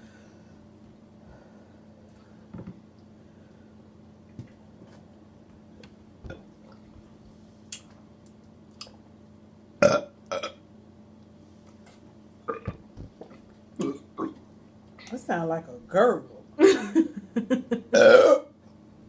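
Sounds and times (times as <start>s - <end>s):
person burping: 9.8s - 10.6s, 12.5s - 12.8s, 13.8s - 14.4s, 17.9s - 18.5s.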